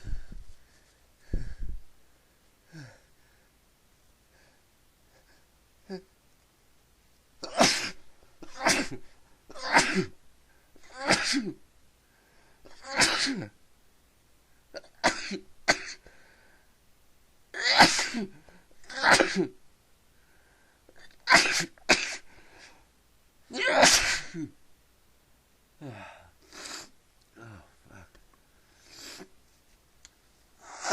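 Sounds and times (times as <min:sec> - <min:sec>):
man sneezing: 0:07.4 - 0:09.0, 0:09.6 - 0:10.1, 0:17.6 - 0:19.5, 0:23.5 - 0:24.5, 0:30.6 - 0:30.9.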